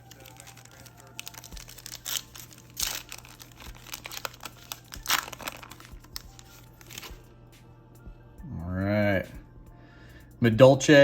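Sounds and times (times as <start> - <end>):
foil wrapper crinkling and tearing: 0.0 - 7.3.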